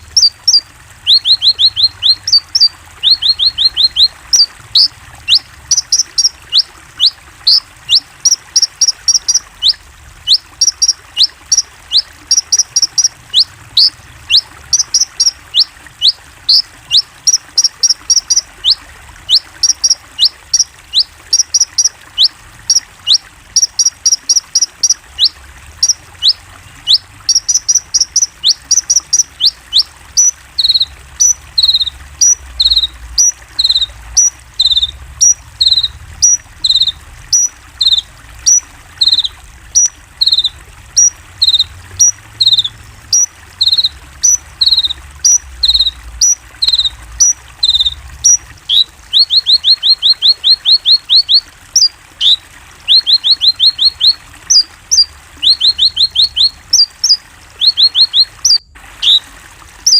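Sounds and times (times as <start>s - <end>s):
down-sweeping bird notes: 0.0s - 21.9s, 52.2s - 59.2s
songbird chirping: 0.0s - 59.2s.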